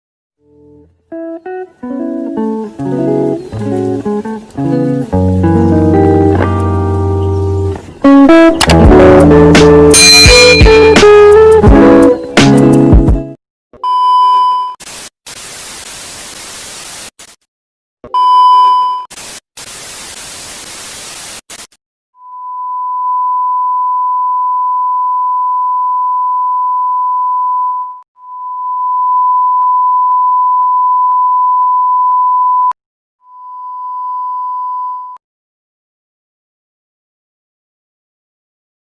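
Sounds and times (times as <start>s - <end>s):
steady high test-tone beep: 9.9s - 11.2s, 33.3s - 35.2s
short high beeps: 9.9s - 11.3s, 13.8s - 14.8s, 27.1s - 35.2s
static hiss: 14.8s - 17.4s, 19.1s - 21.8s.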